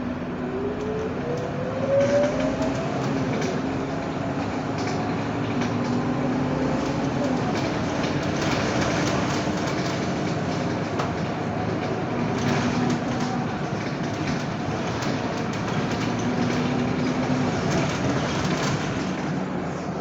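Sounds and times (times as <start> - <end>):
diesel bus engine running: 0.0 - 20.0
road and tyre noise: 0.0 - 20.0.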